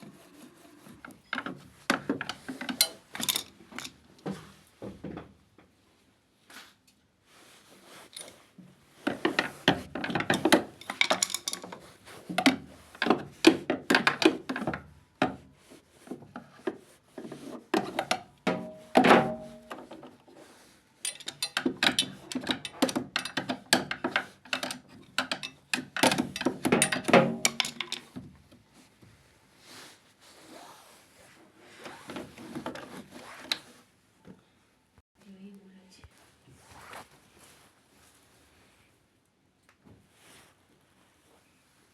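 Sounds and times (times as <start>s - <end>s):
hand tools knocking and clattering: 1.2s - 5.3s, 9.1s - 15.4s, 17.8s - 20.0s, 21.0s - 28.3s.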